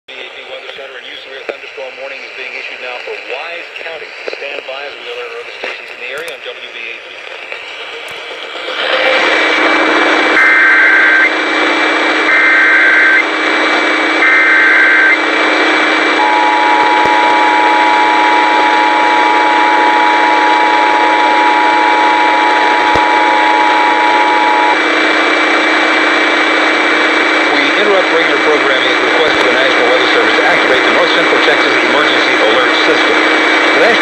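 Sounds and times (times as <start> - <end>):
static hiss: 0.1 - 34.0
two-tone attention signal: 16.2 - 24.8.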